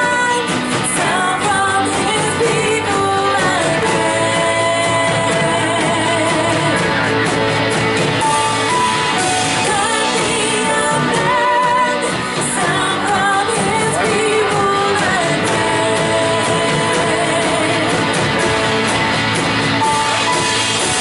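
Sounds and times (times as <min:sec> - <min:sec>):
band playing a hymn with guitar: 0:00.0 - 0:21.0
voices singing: 0:00.0 - 0:21.0.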